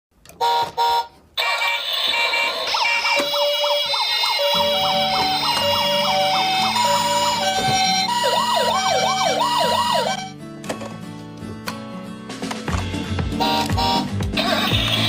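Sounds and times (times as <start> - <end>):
electronic warbling siren: 1.4 - 10.3
electronic beeping tones: 2.8 - 10.3.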